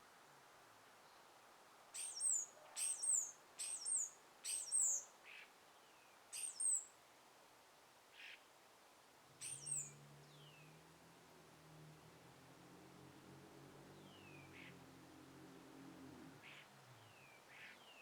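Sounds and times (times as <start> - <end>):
fainter lower bird chirps: 2.0 - 6.9, 9.4 - 10.8.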